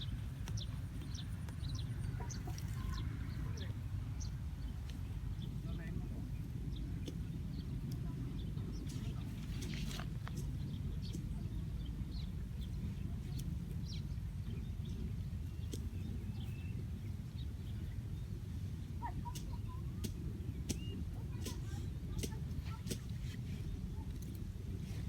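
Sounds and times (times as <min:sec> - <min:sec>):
low rumble: 0:00.0 - 0:19.1.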